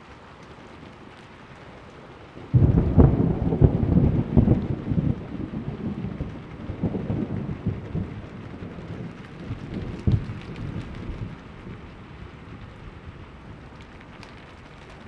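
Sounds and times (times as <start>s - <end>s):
steady rain: 0.0s - 15.0s
thunder rumbling: 0.0s - 15.0s
low thunder crack: 2.4s - 13.8s.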